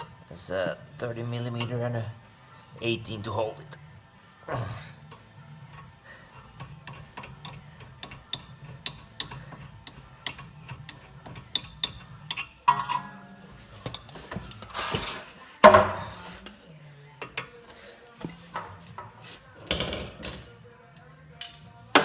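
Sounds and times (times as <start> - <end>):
ratchet wrench clicking: 5.0 - 13.0
tools clattering: 5.7 - 20.6, 21.4 - 22.0
scrape: 13.5 - 16.5, 17.6 - 19.5.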